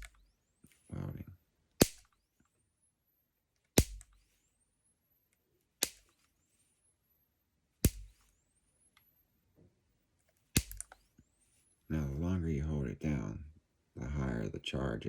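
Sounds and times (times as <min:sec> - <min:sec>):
capacitor discharge snaps: 0:00.0 - 0:00.2, 0:01.7 - 0:02.2, 0:03.6 - 0:04.2, 0:05.8 - 0:06.2, 0:07.8 - 0:08.3, 0:10.5 - 0:11.0.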